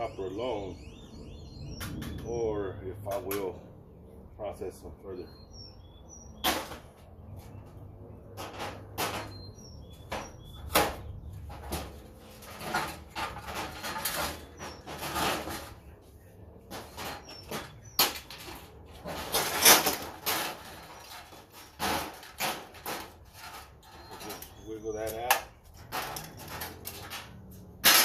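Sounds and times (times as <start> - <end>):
metal parts clanking and scraping: 8.3 - 16.0, 16.6 - 28.0.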